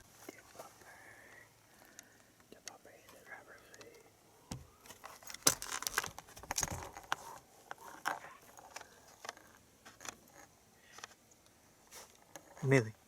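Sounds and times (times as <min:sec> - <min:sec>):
small objects clicking and rattling: 0:04.9 - 0:07.2.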